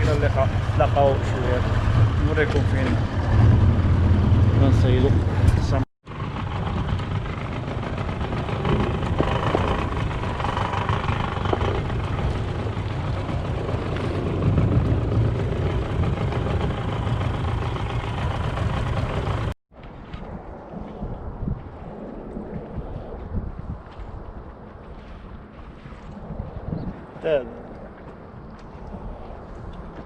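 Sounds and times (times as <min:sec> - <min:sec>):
engine running steadily: 0:00.0 - 0:19.6.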